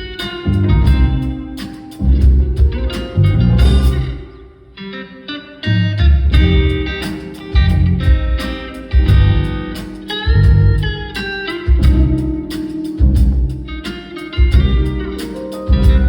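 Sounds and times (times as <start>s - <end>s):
bass and drums: 0.0s - 4.4s, 6.1s - 16.0s
electric guitar melody: 0.0s - 16.0s.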